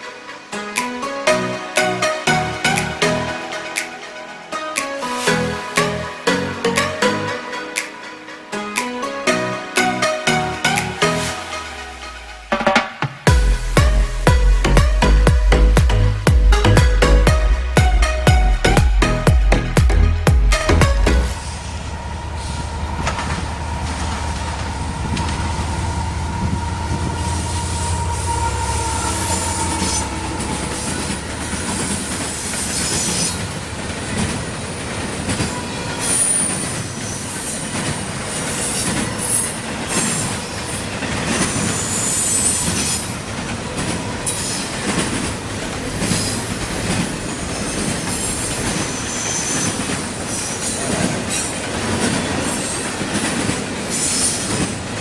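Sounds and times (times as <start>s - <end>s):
diesel locomotive rumble: 20.1s - 36.0s
high-pitched wheel screeching: 21.0s - 44.8s
train wheels clacking over rails: 21.1s - 55.0s.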